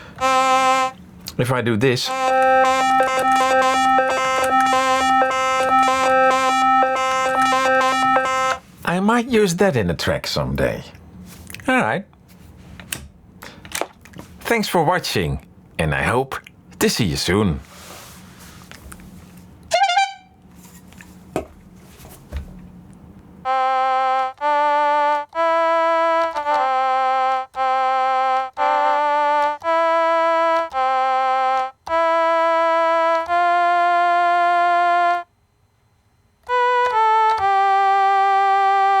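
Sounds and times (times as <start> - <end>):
buzzy synth keyboard melody: 0.2 - 1.0, 2.1 - 8.6, 23.5 - 35.3, 36.4 - 39.0.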